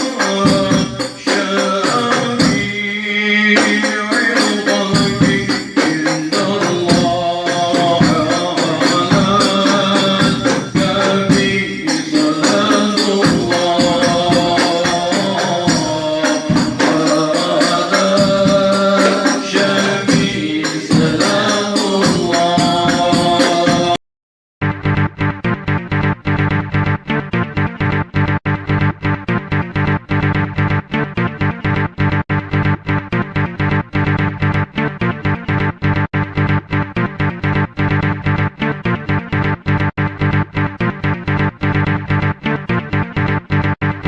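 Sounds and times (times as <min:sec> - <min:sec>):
jingling tambourine beat: 0:00.0 - 0:03.0, 0:03.6 - 0:24.0
religious song singing: 0:00.0 - 0:24.0.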